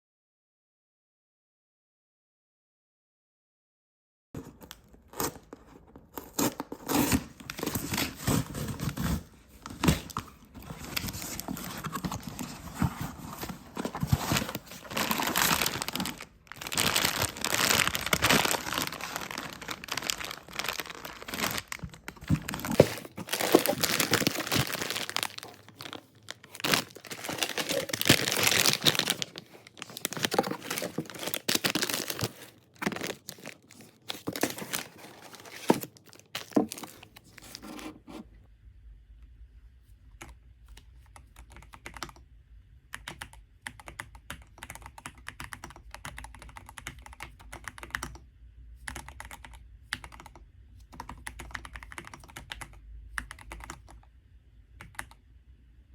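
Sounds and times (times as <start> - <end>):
hands crinkling and rustling: 7.5 - 37.8.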